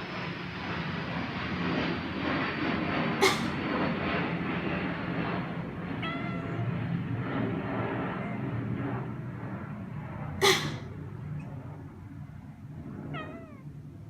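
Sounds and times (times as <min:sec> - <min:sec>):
low background hum: 0:00.0 - 0:14.0
person coughing: 0:03.2 - 0:03.6, 0:10.4 - 0:10.9
cat meowing: 0:05.9 - 0:06.8, 0:08.1 - 0:08.5, 0:10.4 - 0:10.9, 0:13.1 - 0:13.8.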